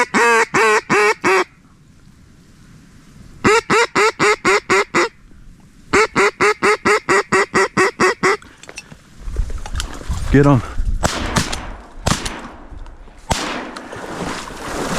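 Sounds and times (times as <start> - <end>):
duck call quacks: 0.0 - 1.6, 3.4 - 5.2, 5.9 - 8.5.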